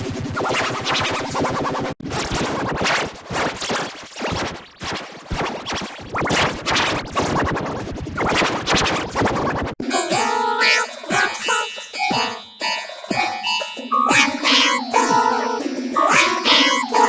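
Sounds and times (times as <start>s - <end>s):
choppy scratch-like stutters: 0.0s - 11.7s, 13.9s - 17.0s
electronic music: 8.2s - 17.0s
stepped synthesizer melody: 10.1s - 17.0s.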